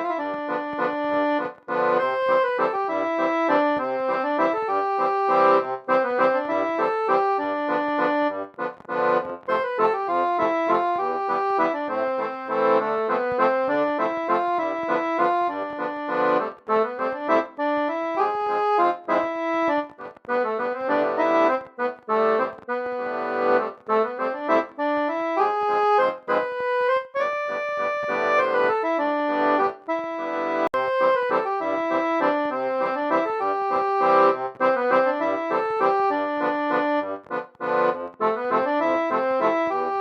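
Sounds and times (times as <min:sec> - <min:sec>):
instrumental music: 0:00.0 - 0:40.0.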